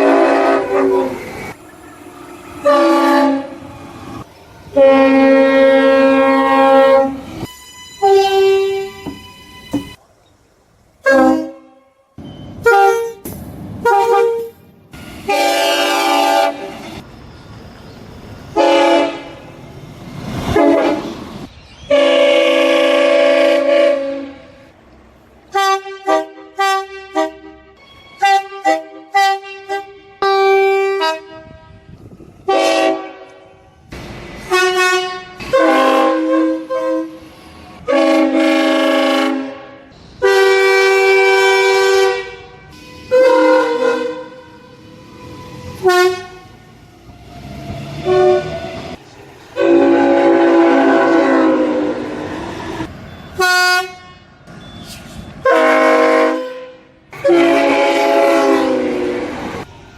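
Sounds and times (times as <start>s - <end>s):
train horn blasts: 0.0s - 1.3s, 2.6s - 3.7s, 4.7s - 10.0s, 11.0s - 14.6s, 15.2s - 16.8s, 18.6s - 19.4s, 20.5s - 21.1s, 21.9s - 24.7s, 25.5s - 46.6s, 48.0s - 49.0s, 49.6s - 52.8s, 53.4s - 54.3s, 55.4s - 59.7s.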